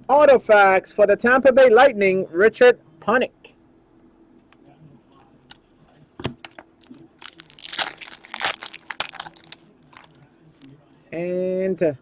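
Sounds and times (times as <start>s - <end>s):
plastic packaging crinkling: 6.4s - 10.2s.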